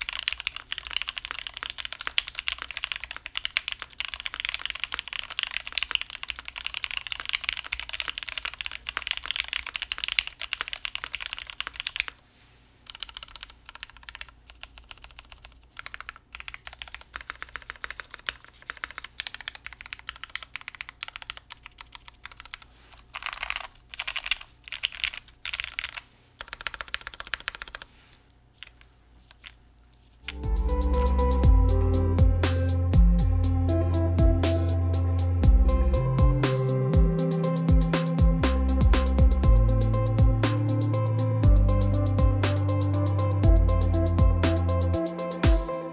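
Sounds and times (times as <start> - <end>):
mechanical keyboard typing: 0.0 - 12.2, 12.9 - 27.9.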